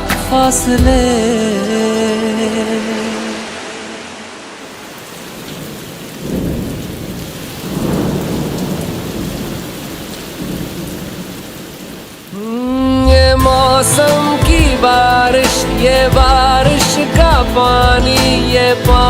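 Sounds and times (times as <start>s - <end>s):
heavy rain falling: 0.5s - 19.0s
thunder rumbling: 4.6s - 18.2s.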